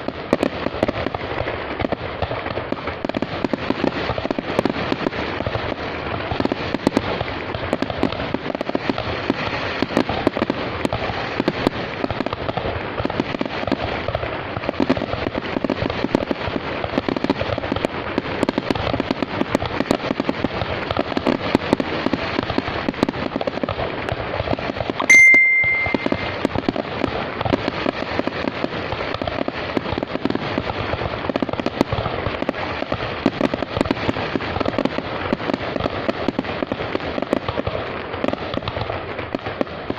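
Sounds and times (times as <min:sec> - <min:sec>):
fireworks crackling: 0:00.0 - 0:39.9
short high beep: 0:25.1 - 0:26.4.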